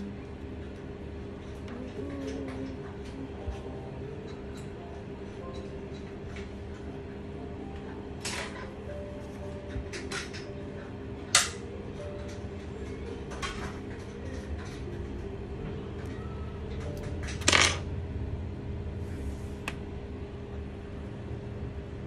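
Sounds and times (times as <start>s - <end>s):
low electrical hum: 0.0s - 22.0s.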